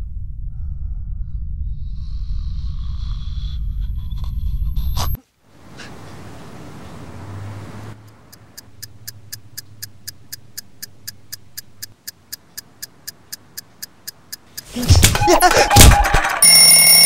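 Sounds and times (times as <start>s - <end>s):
alarm clock ticking: 8.0s - 17.0s.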